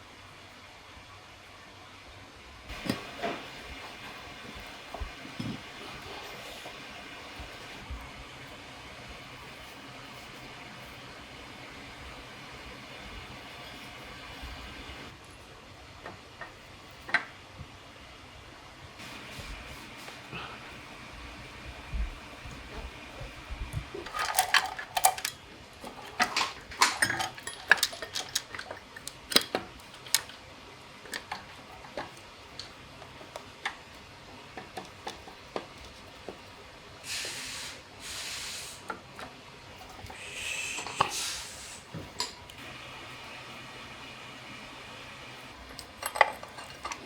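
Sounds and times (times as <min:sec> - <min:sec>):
metal parts and tools clinking: 0:24.0 - 0:30.4, 0:45.7 - 0:47.0
hissing: 0:40.1 - 0:41.9.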